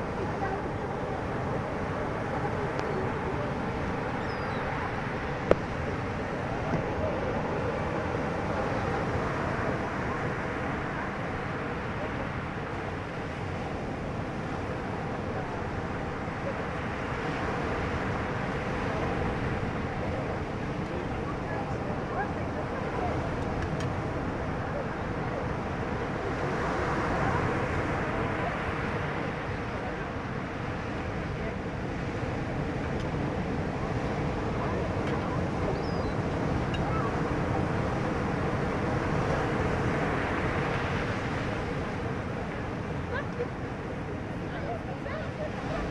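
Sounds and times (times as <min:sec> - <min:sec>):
boat engine running: 0:00.0 - 0:17.6
wind and water rushing: 0:00.0 - 0:45.9.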